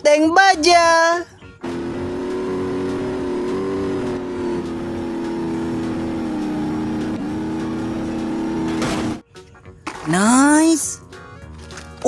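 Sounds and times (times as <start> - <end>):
vehicle engine running: 1.6 - 9.2.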